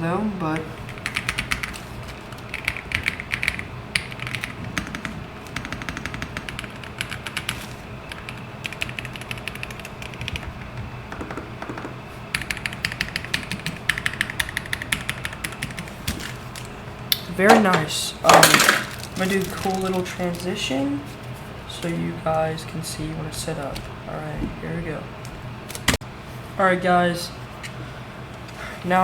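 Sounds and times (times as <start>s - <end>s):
mechanical keyboard typing: 0.9s - 1.8s, 2.5s - 10.5s, 11.2s - 15.9s.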